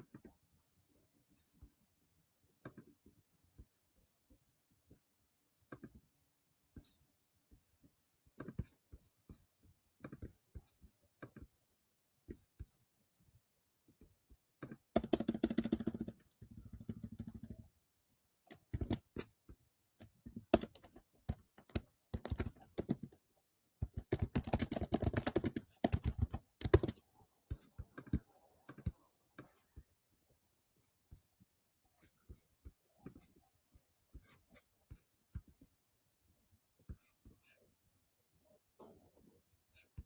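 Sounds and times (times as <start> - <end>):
computer keyboard typing: 15.0 - 17.6, 18.5 - 19.1, 20.5 - 23.2, 23.8 - 27.0.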